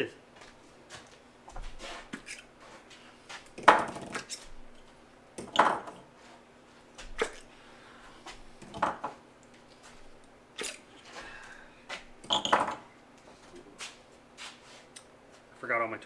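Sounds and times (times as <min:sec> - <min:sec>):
quiet rustling: 0:09.5 - 0:12.2, 0:13.1 - 0:15.7.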